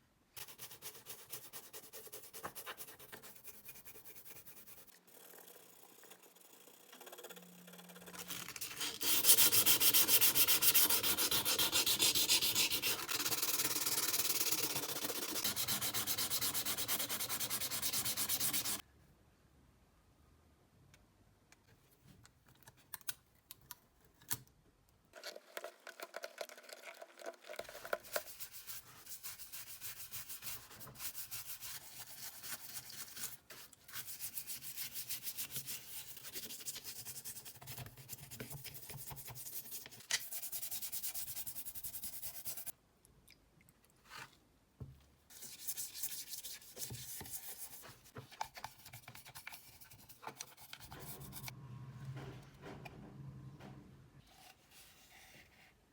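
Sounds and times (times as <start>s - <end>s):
hand sanding strokes: 9.0s - 18.8s.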